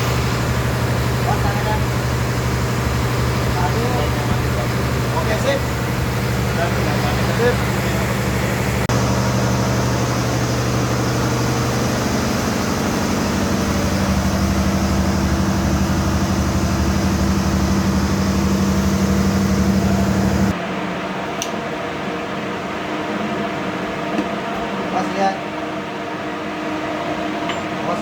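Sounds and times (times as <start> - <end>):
machine humming: 0.0 - 21.2.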